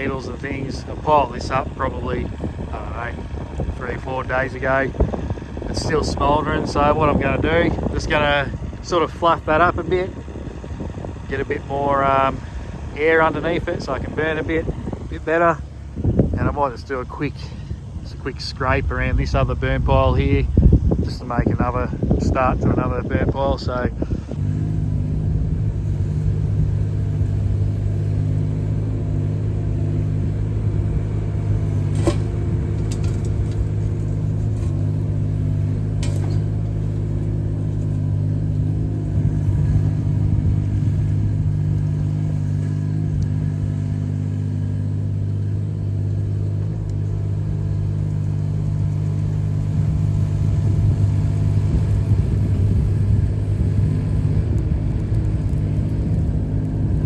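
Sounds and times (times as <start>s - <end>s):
diesel engine running: 0.0s - 57.0s
excavator digging and scraping: 0.0s - 57.0s.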